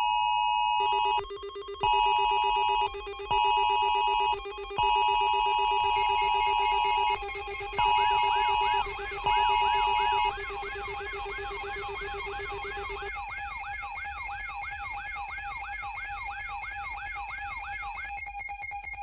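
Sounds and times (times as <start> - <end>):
steady electronic alert tones: 0.4 - 16.2
electronic siren sweeping: 0.4 - 19.0.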